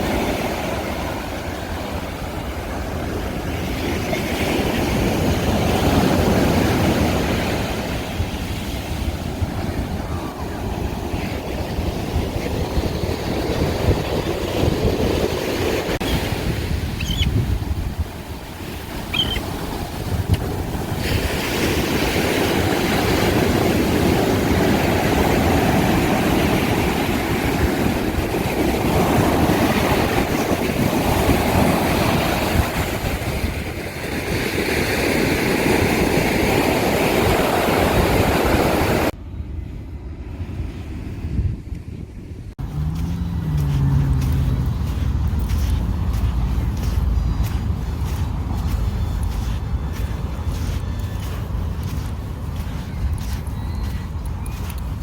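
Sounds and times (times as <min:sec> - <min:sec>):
surf breaking on beach: 0:00.0 - 0:39.1
wind buffeting microphone: 0:00.0 - 0:55.0.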